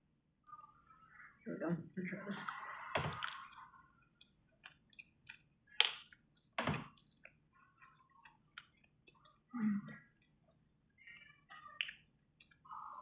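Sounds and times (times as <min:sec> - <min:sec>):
person chewing food: 0:03.1 - 0:12.9.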